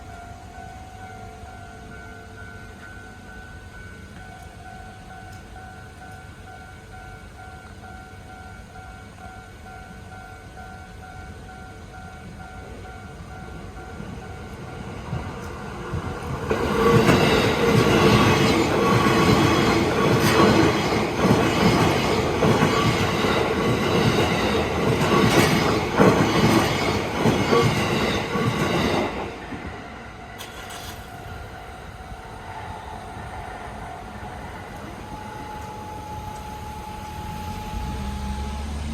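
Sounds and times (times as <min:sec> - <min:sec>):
train rumble and wheel clatter: 0:00.0 - 0:38.9
crossing signal warning tone: 0:34.2 - 0:38.9.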